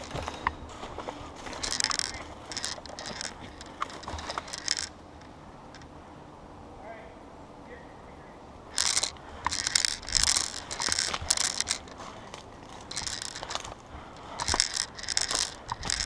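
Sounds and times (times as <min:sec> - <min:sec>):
footsteps crunching dry leaves: 0:00.0 - 0:04.6, 0:10.0 - 0:14.5.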